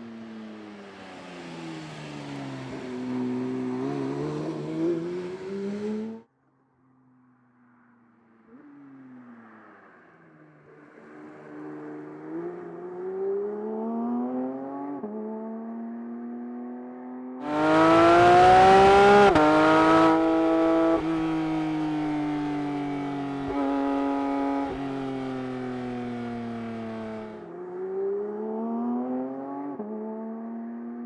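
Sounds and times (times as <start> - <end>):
car engine accelerating through gears: 1.6 - 6.2, 17.4 - 31.0.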